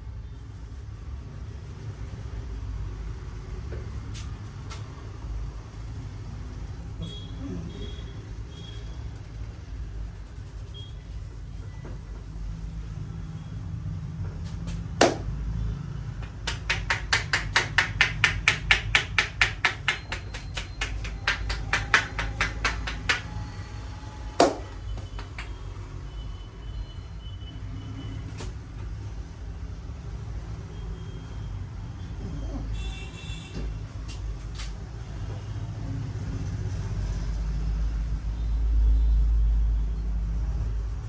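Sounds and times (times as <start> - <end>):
hands slapping in chopping massage: 15.0 - 15.3, 16.2 - 23.3, 24.4 - 25.6.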